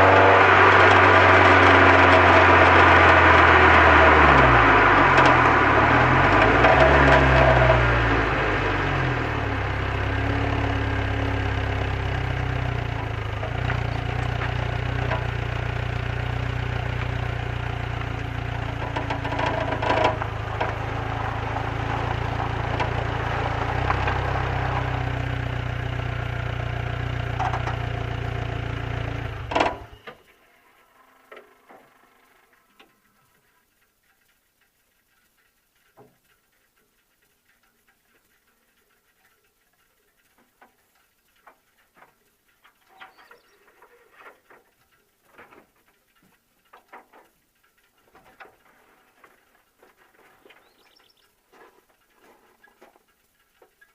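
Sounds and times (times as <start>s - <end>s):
engine switch-off clunk: 0.0s - 34.4s, 40.1s - 53.9s
car engine idling: 0.0s - 53.9s
faint ticks: 25.2s - 53.9s.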